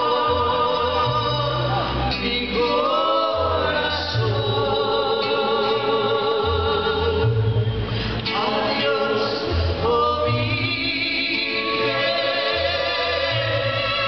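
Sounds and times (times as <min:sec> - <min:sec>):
steady bass line: 0:00.0 - 0:08.8
mariachi group playing: 0:00.0 - 0:14.0.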